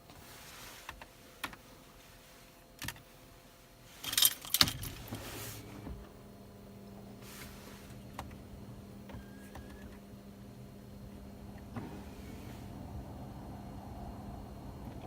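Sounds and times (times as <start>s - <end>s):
clatter of small parts: 4.0s - 5.0s
metallic jingling rattles: 4.0s - 5.0s.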